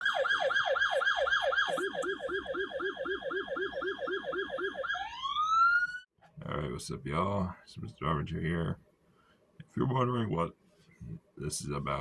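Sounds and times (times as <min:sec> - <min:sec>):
electronic siren yelping: 0:00.0 - 0:06.1.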